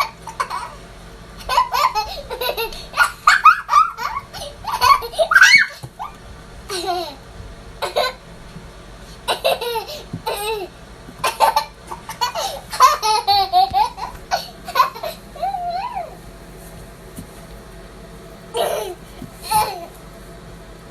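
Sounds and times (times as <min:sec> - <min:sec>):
toddler giggling: 0:00.0 - 0:00.8, 0:01.4 - 0:07.2, 0:07.8 - 0:08.2, 0:09.3 - 0:16.2, 0:18.5 - 0:20.0.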